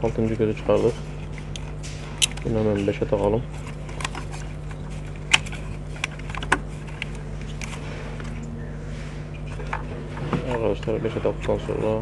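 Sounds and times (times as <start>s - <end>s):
steady low hum: 0.0s - 12.0s
plastic clicks and knocks: 5.3s - 7.2s.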